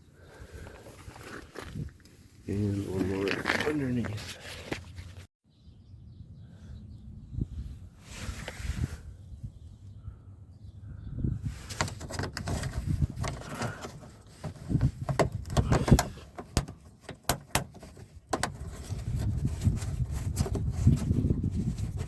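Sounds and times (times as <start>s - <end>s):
plastic fender liner clicks and scraping: 11.6s - 22.0s.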